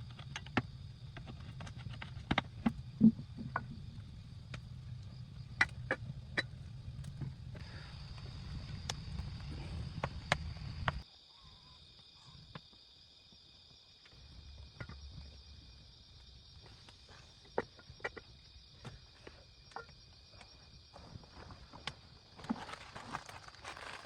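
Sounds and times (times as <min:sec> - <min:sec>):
insects droning: 0:00.0 - 0:24.0
low rumble: 0:02.8 - 0:11.0.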